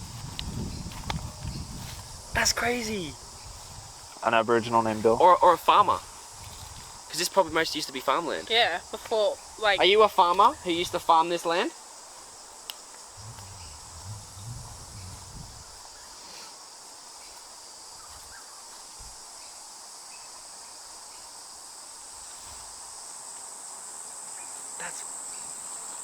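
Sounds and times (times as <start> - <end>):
insects chirring: 0.0 - 26.0
faint low rumbling: 13.2 - 15.8.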